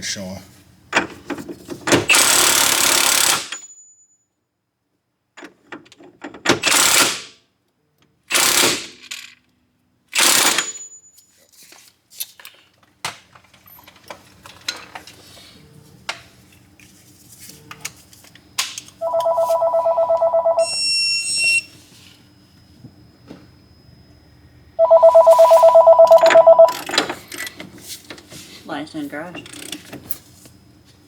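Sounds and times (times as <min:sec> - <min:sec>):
brief higher tone: 0:19.0 - 0:21.7, 0:24.8 - 0:26.8
mobile phone ringing: 0:19.0 - 0:21.7, 0:24.8 - 0:26.8.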